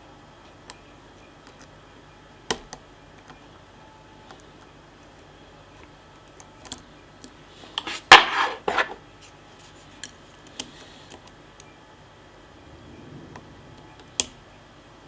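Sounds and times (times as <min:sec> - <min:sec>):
metallic scraping and clinking: 0:07.7 - 0:09.0.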